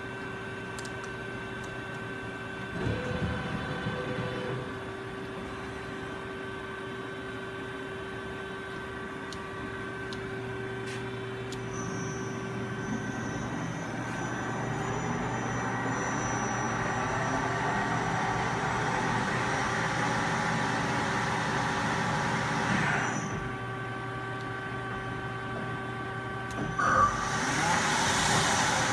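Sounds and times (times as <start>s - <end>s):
lathe machine hum: 11.7s - 28.9s
spindle whine and rushing: 12.4s - 23.4s.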